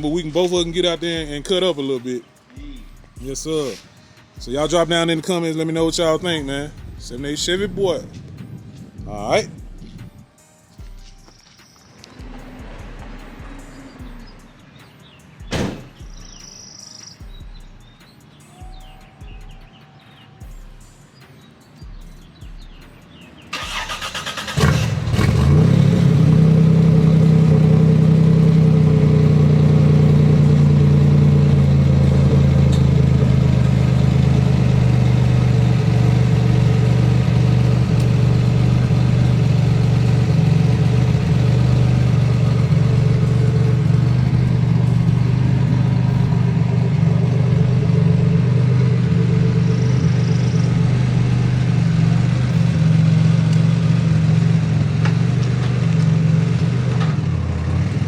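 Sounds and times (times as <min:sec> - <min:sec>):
car engine idling: 0:00.0 - 0:01.8, 0:04.4 - 0:05.2, 0:05.8 - 0:10.2, 0:23.5 - 0:58.0
car engine cranking by starter: 0:23.5 - 0:58.0.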